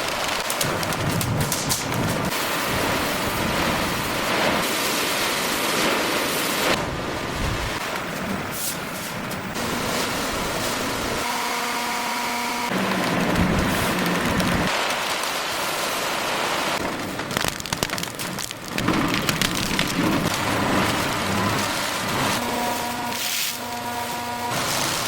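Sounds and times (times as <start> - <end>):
rapid rattling clatter: 0.1 - 2.3.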